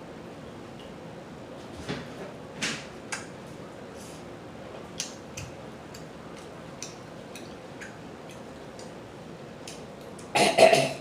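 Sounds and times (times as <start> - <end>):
lip smacks while eating: 5.0 - 9.0.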